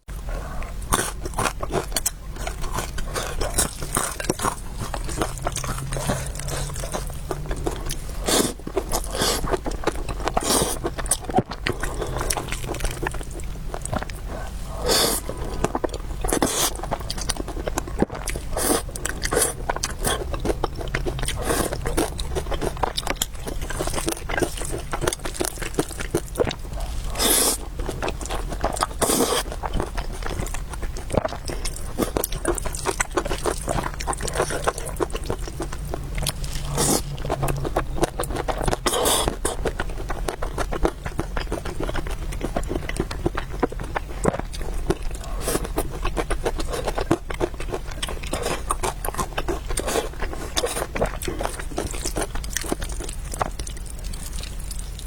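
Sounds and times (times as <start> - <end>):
wet chewing: 0.2 - 55.0
slurping: 0.4 - 17.4, 18.0 - 30.4, 31.4 - 40.4.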